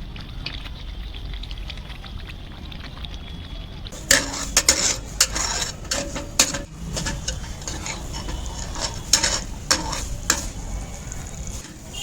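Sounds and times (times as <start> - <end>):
metal ladle scraping a pan: 4.0 - 12.0.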